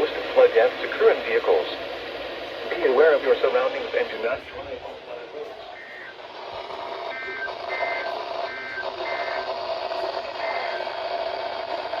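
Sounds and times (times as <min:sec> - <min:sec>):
radio static hiss: 0:00.0 - 0:12.0
two-tone data chirps: 0:05.7 - 0:06.2, 0:07.1 - 0:09.6.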